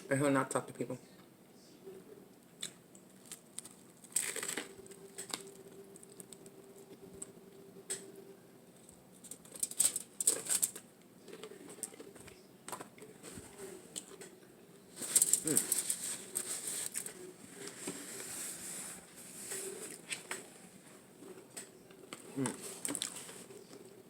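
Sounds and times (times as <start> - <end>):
crisp crunching bites: 2.6 - 4.7.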